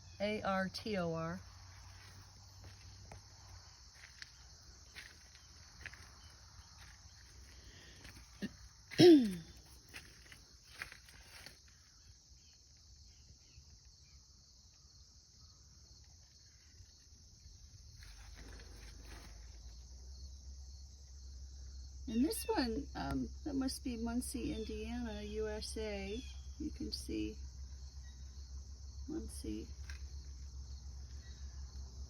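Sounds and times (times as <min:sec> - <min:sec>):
crickets chirring: 0:00.0 - 0:32.0
light footsteps: 0:01.7 - 0:09.0, 0:09.7 - 0:11.7.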